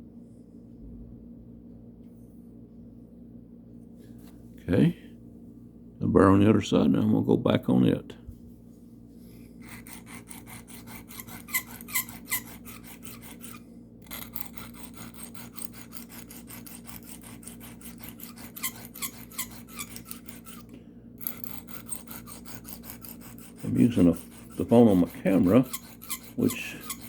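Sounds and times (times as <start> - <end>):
knife scraping on sharpening stone: 9.6 - 27.0.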